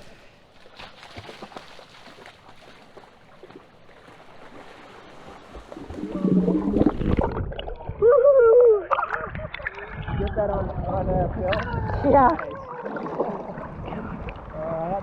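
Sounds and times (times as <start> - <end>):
river water flowing: 0.0 - 10.0
splashing in water: 0.6 - 8.1.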